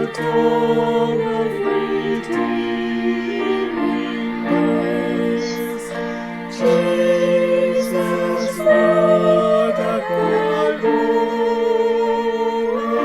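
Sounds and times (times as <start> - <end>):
slow gentle music: 0.0 - 13.0.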